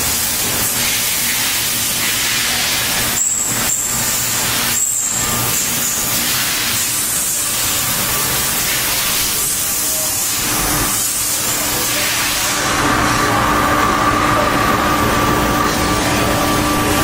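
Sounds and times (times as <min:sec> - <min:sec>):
steam cleaner hissing: 0:00.0 - 0:12.8.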